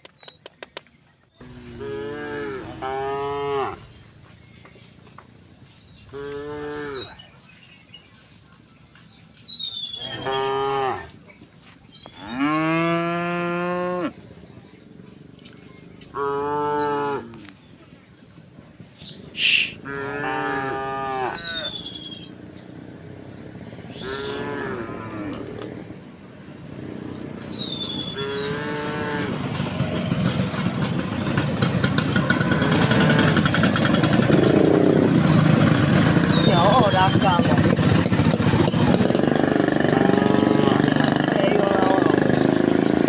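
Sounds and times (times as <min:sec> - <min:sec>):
small birds chirping: 0:00.0 - 0:43.0
cows mooing: 0:01.4 - 0:04.2, 0:06.0 - 0:07.2, 0:09.9 - 0:11.2, 0:12.2 - 0:14.4, 0:16.1 - 0:17.6, 0:19.4 - 0:21.8, 0:23.9 - 0:25.8, 0:28.0 - 0:29.6, 0:32.0 - 0:43.0
engine: 0:01.4 - 0:07.2, 0:20.3 - 0:43.0.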